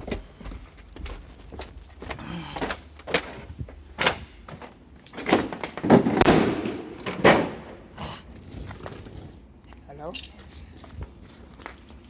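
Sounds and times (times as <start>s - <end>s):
loud knocks and bangs: 3.1s - 7.9s.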